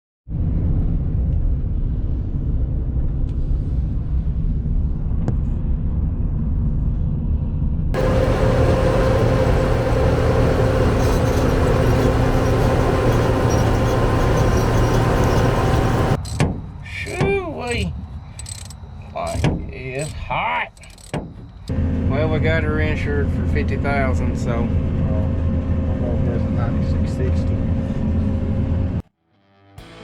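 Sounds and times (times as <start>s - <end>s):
large engine rumbling: 8.0s - 16.2s, 21.7s - 29.0s
mechanical din with whine: 8.0s - 17.3s, 18.4s - 25.9s.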